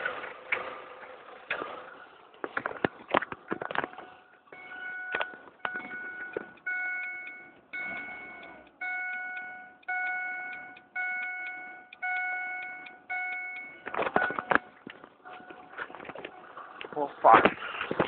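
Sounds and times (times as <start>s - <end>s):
car dashboard warning chime: 4.6s - 15.8s.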